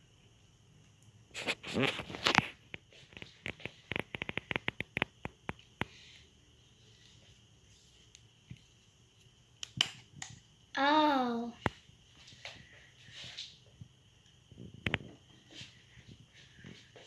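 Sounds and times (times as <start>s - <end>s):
plastic rustling and scraping: 1.3s - 5.0s.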